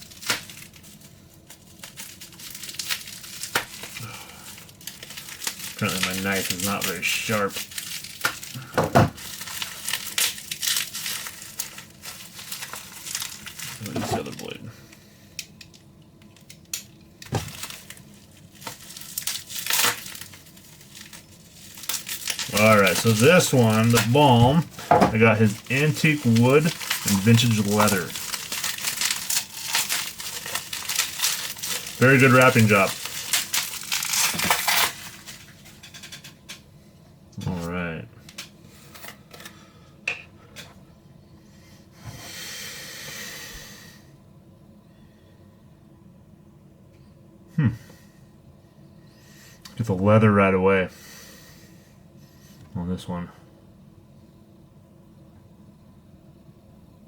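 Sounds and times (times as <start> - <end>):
packaging crinkling and tearing: 0.0 - 14.6, 15.4 - 36.4
knife cutting package: 21.8 - 35.4.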